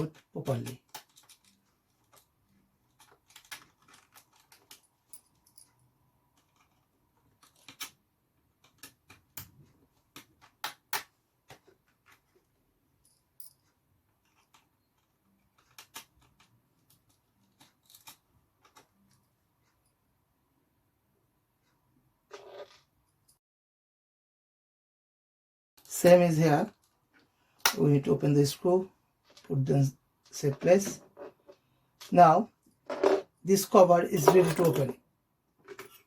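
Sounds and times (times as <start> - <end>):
small tool clicking and scraping: 6.3 - 8.0.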